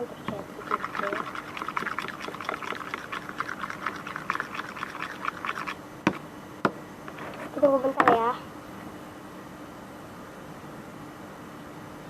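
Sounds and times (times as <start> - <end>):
spoon stirring slime: 0.6 - 5.8.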